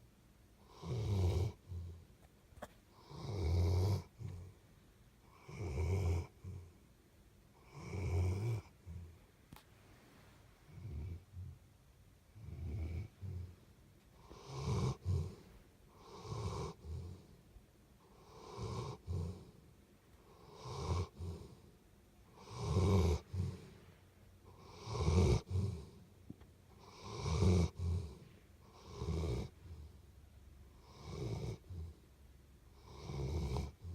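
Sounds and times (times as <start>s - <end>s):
rhythmic snoring: 0.6s - 2.0s, 3.0s - 4.6s, 5.3s - 6.8s, 7.6s - 9.2s, 10.7s - 11.6s, 12.4s - 13.6s, 14.2s - 17.4s, 18.1s - 19.6s, 20.3s - 21.7s, 22.3s - 23.8s, 24.5s - 26.0s, 26.7s - 30.0s, 30.7s - 32.0s, 32.8s - 33.9s.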